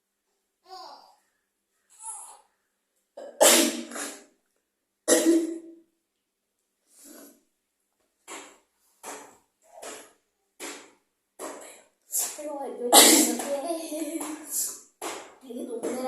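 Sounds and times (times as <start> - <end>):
person sneezing: 3.4 - 4.3, 12.1 - 13.4.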